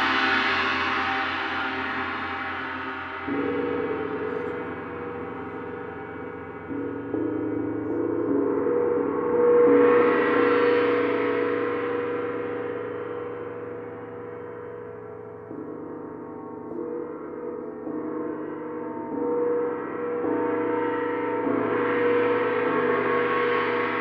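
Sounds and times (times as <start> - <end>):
large gongs ringing: 0.0 - 24.0.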